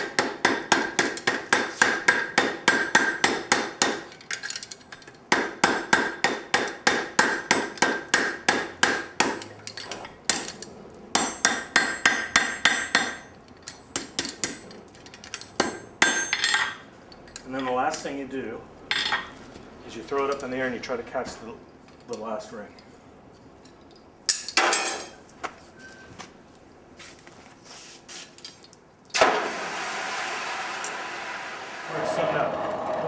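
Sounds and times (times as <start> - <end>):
hammer striking metal on anvil: 0.0 - 4.1, 5.3 - 9.5, 11.2 - 13.3, 15.6 - 16.8, 24.3 - 25.2.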